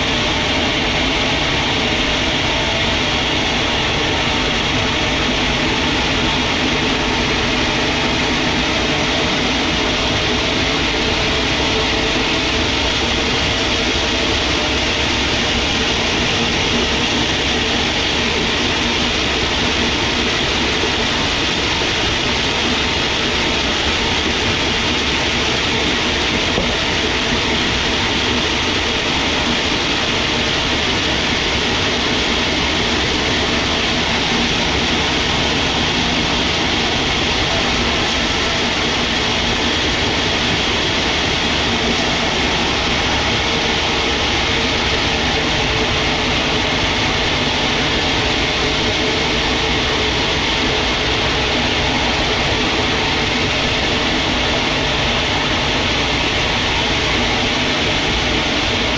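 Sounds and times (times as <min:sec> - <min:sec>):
sawmill machinery running: 0:00.0 - 0:58.9.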